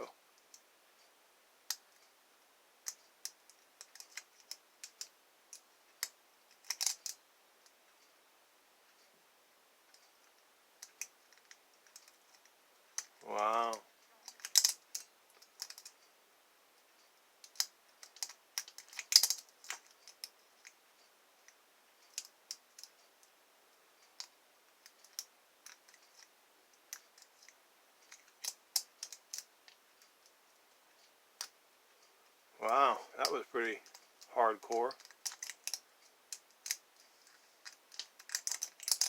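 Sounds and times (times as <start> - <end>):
lock pick clicks and scrapes: 37.6 - 39.0.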